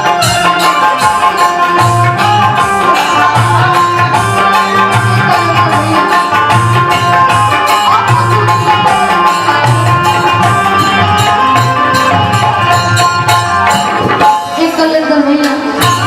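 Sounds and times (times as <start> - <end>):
drums keeping quick beat: 0.0 - 16.0
held melody line: 0.0 - 16.0.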